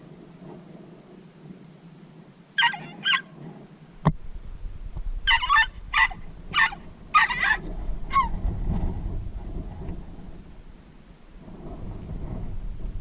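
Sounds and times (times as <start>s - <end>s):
small dog yapping: 2.6s - 3.3s, 5.3s - 8.4s.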